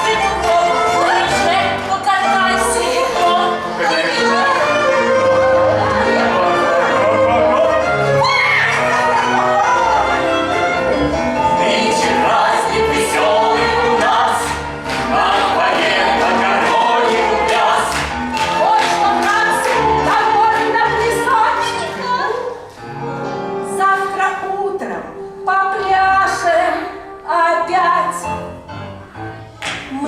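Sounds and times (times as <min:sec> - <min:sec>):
group of voices singing: 0:00.0 - 0:22.3.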